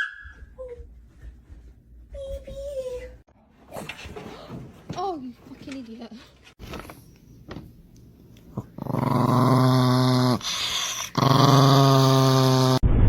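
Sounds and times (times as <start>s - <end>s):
dog growling: 8.5s - 12.8s.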